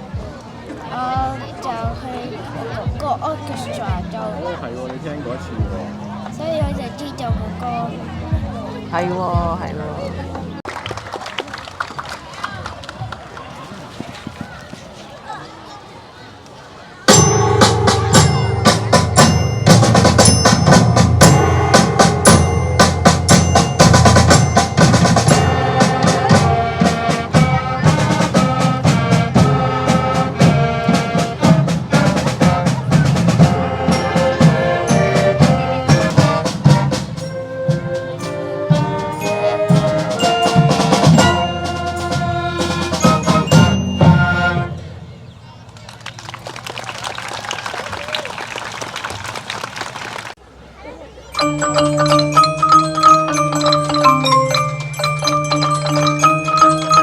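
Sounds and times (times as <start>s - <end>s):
steady drumming: 5.6s - 9.7s, 17.1s - 44.7s, 51.4s - 57.0s
pitched mallet notes: 17.1s - 44.9s, 51.3s - 57.0s.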